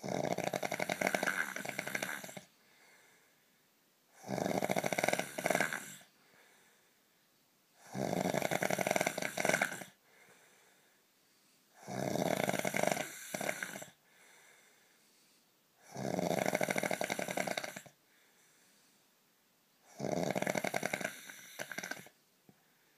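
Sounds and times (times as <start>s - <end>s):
heavy snoring: 0.0s - 3.0s, 4.2s - 6.1s, 7.8s - 10.0s, 11.7s - 14.4s, 15.8s - 18.0s, 19.9s - 22.2s
faint breath out: 2.5s - 3.6s, 6.0s - 7.1s, 9.9s - 11.8s, 14.0s - 15.6s, 18.0s - 19.2s.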